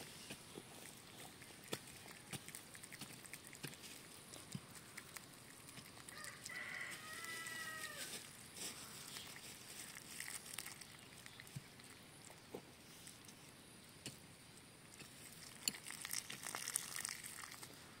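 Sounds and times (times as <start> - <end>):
distant rooster crowing: 6.1 - 8.2.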